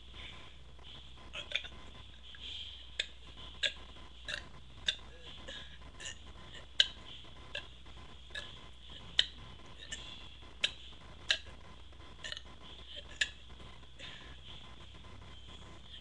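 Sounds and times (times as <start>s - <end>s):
throat clicks: 3.0s - 11.6s.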